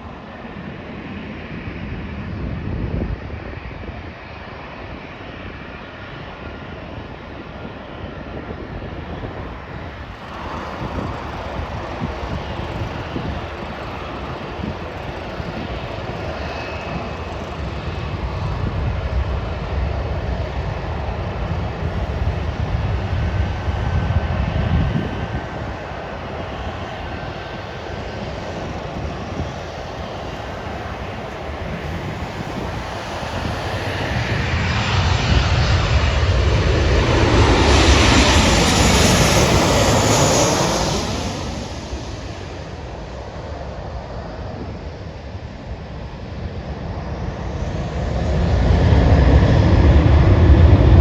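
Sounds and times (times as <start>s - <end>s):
jet airliner engines passing: 0.0s - 51.0s
faint high whine: 9.0s - 46.8s.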